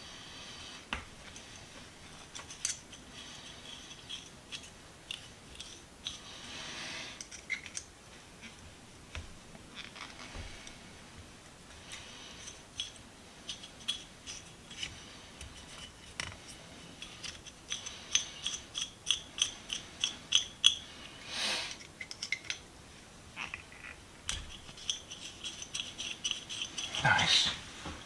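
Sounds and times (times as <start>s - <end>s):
wrench metal clicks and scrapes: 17.0s - 20.8s, 23.4s - 27.2s.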